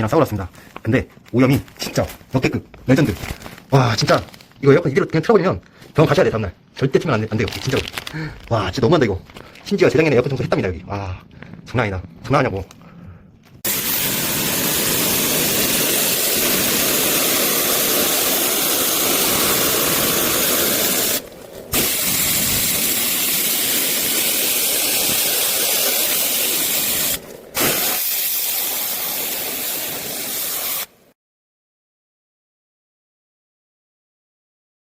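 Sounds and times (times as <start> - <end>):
high-pressure water spray hissing: 13.6 - 30.9.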